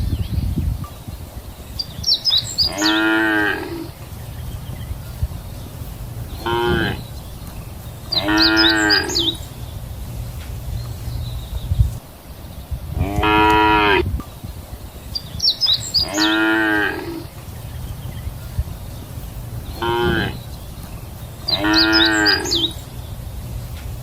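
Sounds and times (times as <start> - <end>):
cows mooing: 2.6 - 4.0, 6.4 - 7.1, 8.1 - 9.4, 13.0 - 14.0, 15.9 - 17.3, 19.7 - 20.5, 21.4 - 22.8
steady low rumble: 3.6 - 16.1, 17.0 - 24.0.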